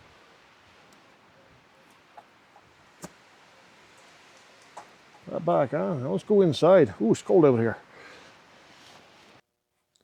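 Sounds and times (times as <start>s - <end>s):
faint ticks: 3.9s - 5.3s.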